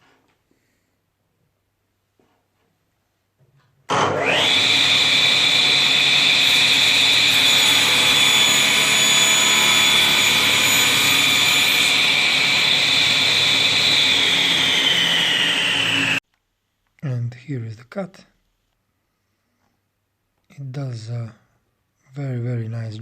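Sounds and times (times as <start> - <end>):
table saw motor whining: 3.9 - 16.2.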